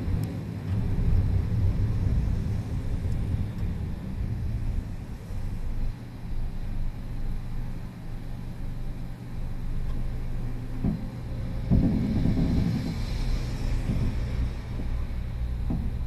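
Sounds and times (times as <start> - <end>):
car engine humming: 0.0 - 8.0.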